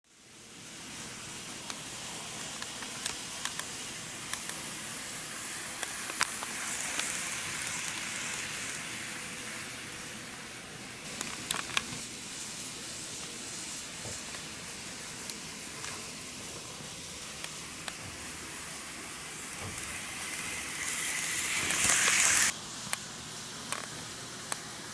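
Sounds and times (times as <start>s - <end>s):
model train wheels and motor hiss: 0.1s - 24.9s.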